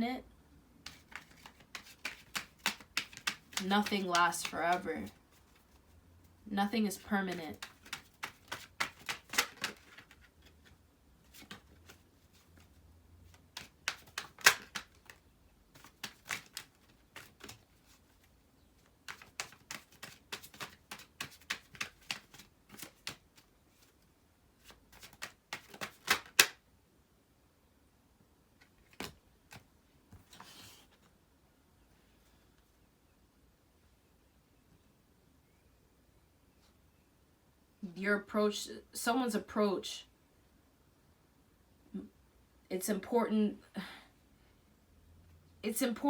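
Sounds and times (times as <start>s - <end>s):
cards being shuffled: 0.8s - 5.9s, 7.0s - 24.0s, 24.6s - 26.6s, 28.6s - 31.1s.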